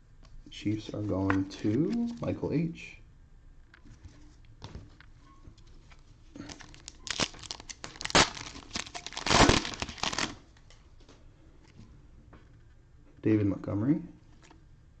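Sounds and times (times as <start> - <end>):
cellophane wrapper tearing and crinkling: 6.4 - 10.4.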